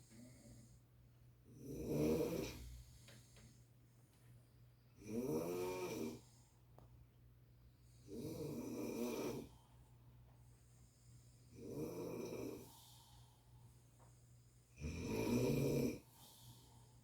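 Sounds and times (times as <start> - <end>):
person snoring: 14.8 - 16.0.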